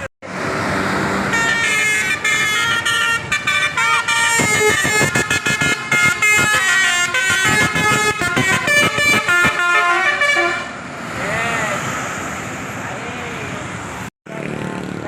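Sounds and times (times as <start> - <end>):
multi-tone bus horn melody: 1.2 - 10.9.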